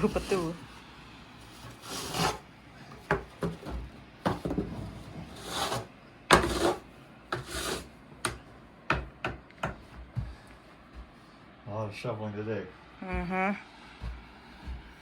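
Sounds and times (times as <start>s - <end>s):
snow shovel scraping wet snow: 1.8s - 2.4s, 7.4s - 7.9s.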